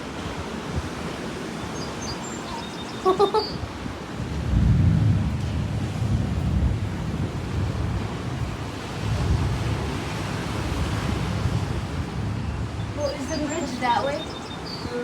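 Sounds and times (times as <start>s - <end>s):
ocean surf: 0.0s - 15.0s
wind buffeting microphone: 0.0s - 15.0s.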